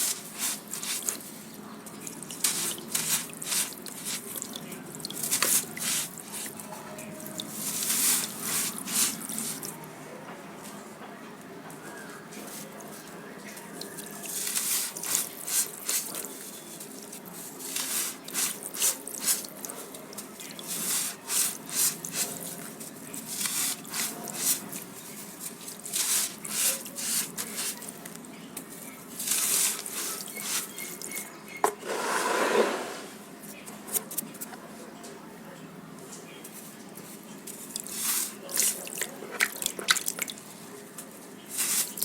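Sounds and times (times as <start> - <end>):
small water drips: 0.0 - 8.1, 12.5 - 31.3, 36.8 - 42.0
baked sand crackling in water: 0.0 - 10.0, 11.4 - 32.9, 36.1 - 42.0.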